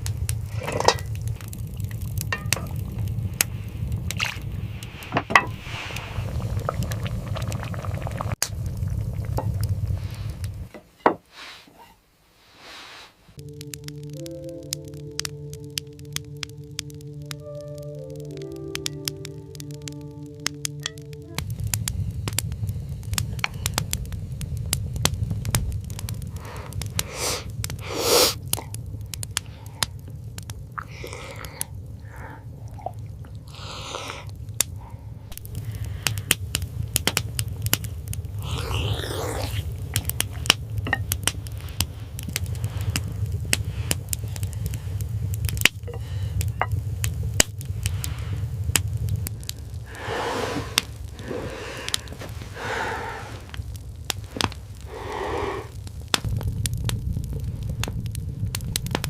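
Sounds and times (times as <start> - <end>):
low rumble: 0.0 - 10.7, 13.3 - 27.8, 34.4 - 59.0
wood fire crackling: 0.0 - 59.0
rustling swishes: 11.3 - 13.4.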